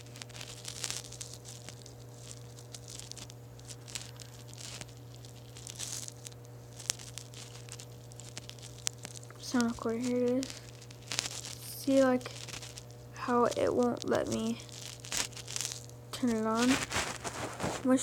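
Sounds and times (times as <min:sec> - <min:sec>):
steady low hum: 0:00.0 - 0:18.0
scuffing rubs on phone: 0:14.6 - 0:18.0.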